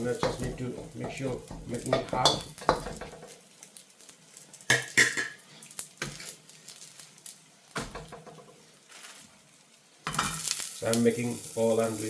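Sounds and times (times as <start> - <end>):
utensils knocking on frying pan: 0.0 - 3.4, 4.7 - 5.4, 7.8 - 8.6.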